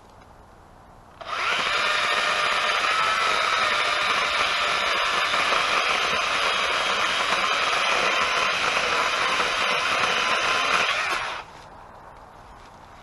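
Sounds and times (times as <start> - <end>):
chainsaw cutting through limb: 1.2 - 11.5.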